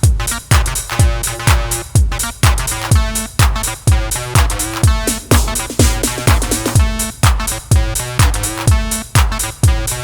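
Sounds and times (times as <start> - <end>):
drum machine kick: 0.0 - 10.0
acid synth bassline: 4.5 - 7.0.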